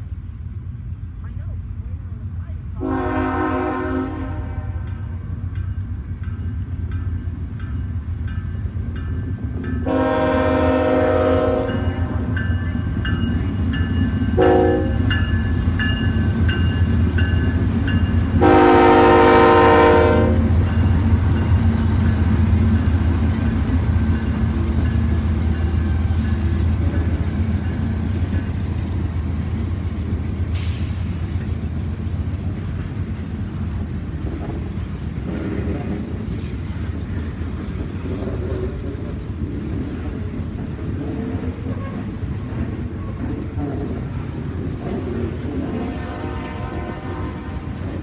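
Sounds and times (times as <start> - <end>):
train horn blasts: 2.8 - 4.9, 9.8 - 12.4, 14.3 - 15.1, 18.3 - 20.8, 41.7 - 42.2, 45.6 - 48.0.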